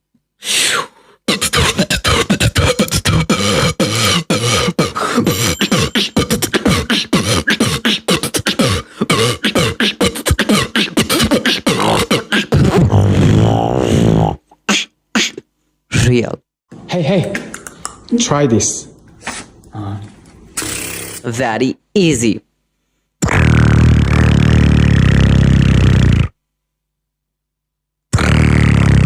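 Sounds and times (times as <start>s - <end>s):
held wavering vocal note: 1.3s - 12.3s
beatboxing clicky percussive sounds: 1.3s - 13.3s, 14.1s - 15.5s, 17.2s - 18.1s, 20.6s - 21.3s, 28.1s - 29.0s.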